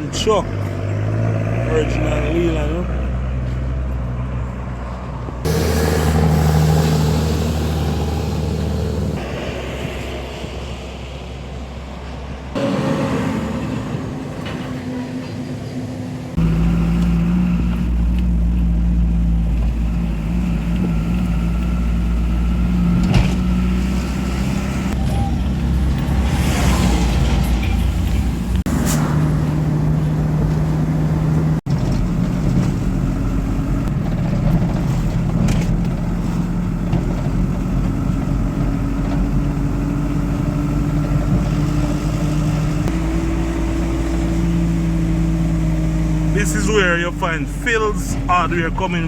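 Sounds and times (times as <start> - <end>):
road noise hiss: 4.8 - 22.8
low engine drone: 5.2 - 49.0.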